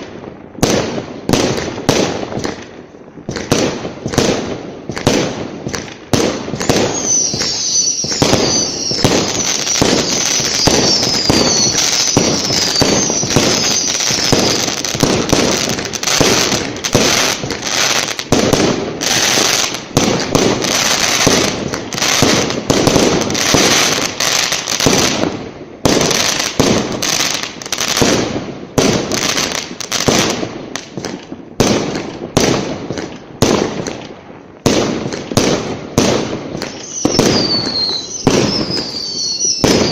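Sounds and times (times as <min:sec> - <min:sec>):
fireworks bangs and crackles: 0:00.0 - 0:39.9
falling firework whistles: 0:06.5 - 0:16.6, 0:36.6 - 0:39.9.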